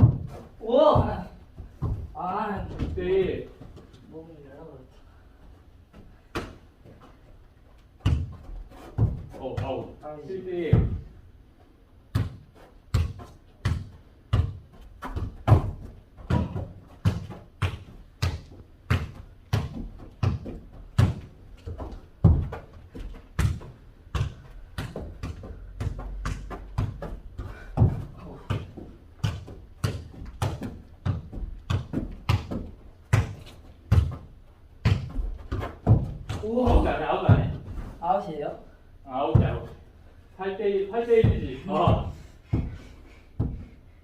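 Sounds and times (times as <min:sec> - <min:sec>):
ball thudding: 0:12.1 - 0:37.7.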